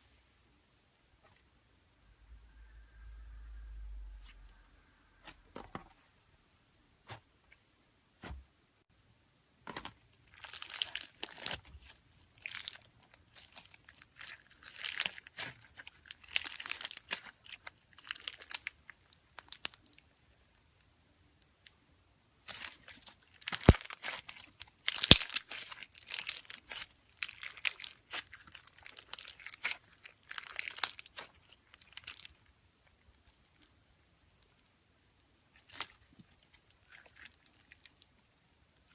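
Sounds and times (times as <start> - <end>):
slime crackling and popping: 10.2 - 20.4, 22.4 - 38.9.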